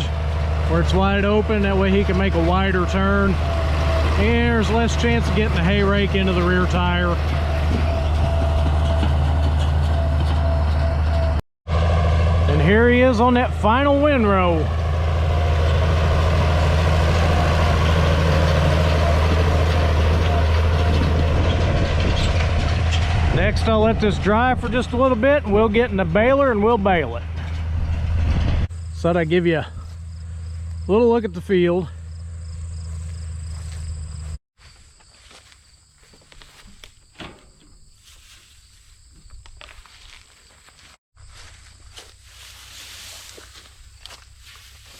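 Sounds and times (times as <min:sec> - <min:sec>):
tractor engine droning: 0:00.0 - 0:44.9
high insect trill: 0:29.8 - 0:31.0, 0:32.0 - 0:44.9
rustling steps through hay: 0:34.6 - 0:37.0, 0:38.0 - 0:44.9.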